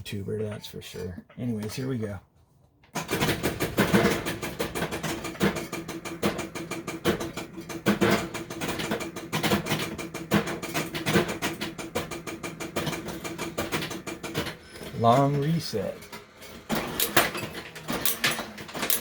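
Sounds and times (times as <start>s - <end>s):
rapid clicks of rifle firing: 3.0s - 14.6s.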